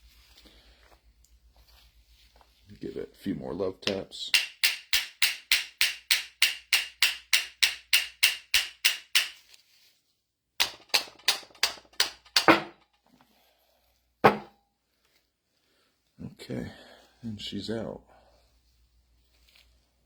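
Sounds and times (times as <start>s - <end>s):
hammer tapping on metal: 4.3s - 9.4s, 10.6s - 12.8s, 14.2s - 14.5s
hard knock: 10.6s - 12.8s, 14.2s - 14.5s.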